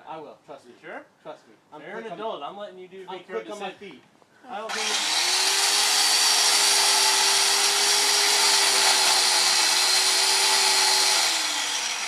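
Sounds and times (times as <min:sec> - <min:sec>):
electric chainsaw cutting wood: 0:04.7 - 0:12.0.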